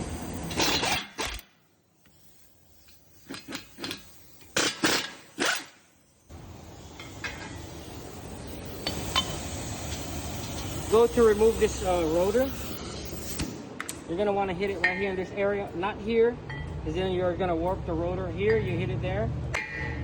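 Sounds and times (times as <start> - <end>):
steady background noise: 0.0 - 20.0
metal parts and tools clinking: 0.2 - 5.9, 6.9 - 7.7.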